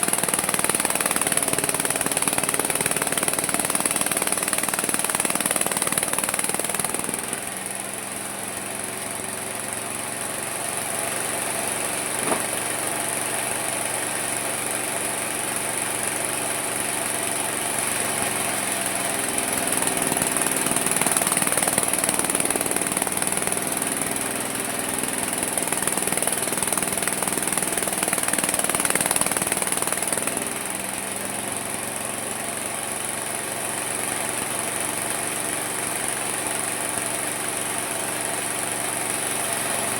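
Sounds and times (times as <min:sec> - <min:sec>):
sawmill sawing through wood: 0:00.0 - 0:30.8.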